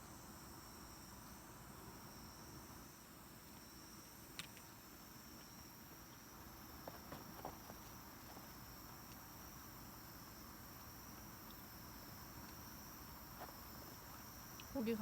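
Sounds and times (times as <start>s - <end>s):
crickets chirring: 0.0s - 15.0s
soft ticks: 14.5s - 14.8s.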